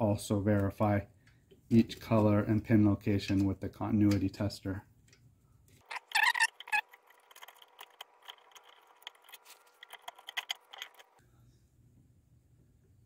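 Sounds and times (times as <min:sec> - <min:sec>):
hand tools clicking and snipping: 0:05.8 - 0:11.2.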